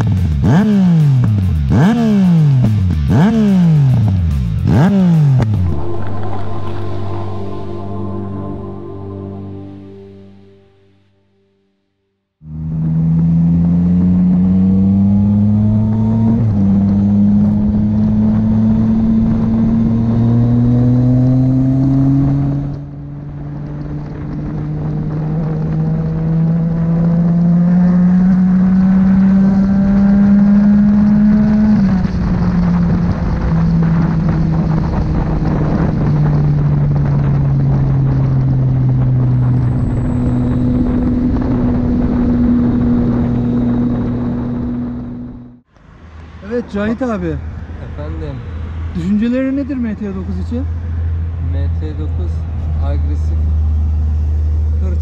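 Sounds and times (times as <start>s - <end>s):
motorcycle engine shifting gears: 0.0s - 6.6s, 12.5s - 45.8s.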